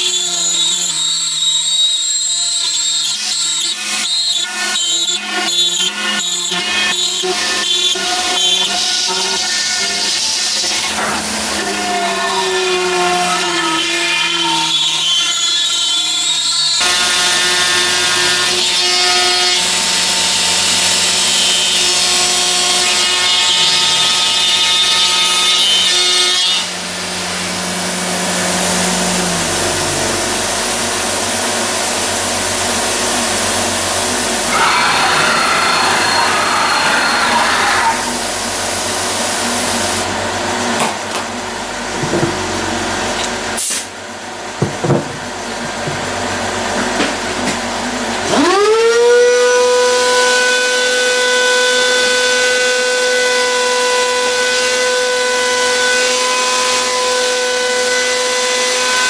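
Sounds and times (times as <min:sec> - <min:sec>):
stepper motors whining: 0:28.1 - 0:31.6, 0:34.0 - 0:38.3.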